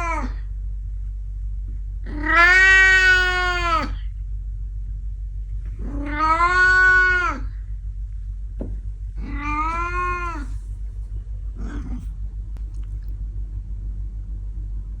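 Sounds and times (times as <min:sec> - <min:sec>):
low hum: 0:00.0 - 0:15.0
cat meowing: 0:02.1 - 0:04.0, 0:05.8 - 0:07.5, 0:09.2 - 0:10.6.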